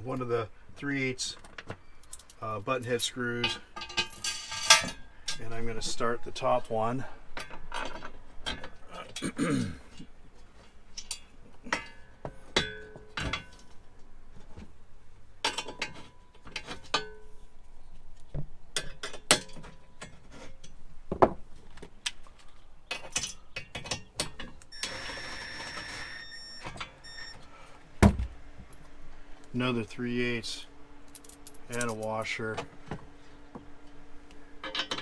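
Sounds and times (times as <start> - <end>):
metal tool clicks and clinks: 2.0 - 5.4, 31.1 - 32.2.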